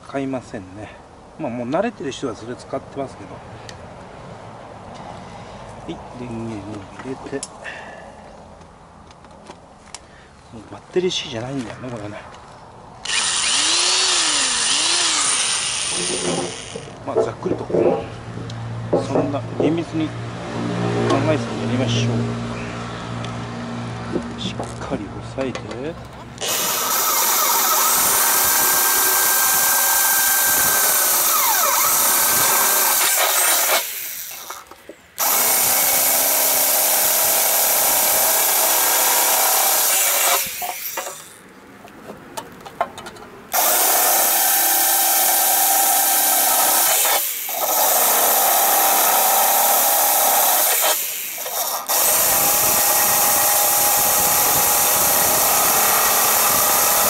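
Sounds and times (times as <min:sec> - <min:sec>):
electric drill boring through metal: 0:13.0 - 0:17.0, 0:26.4 - 0:41.4, 0:43.5 - 0:57.0.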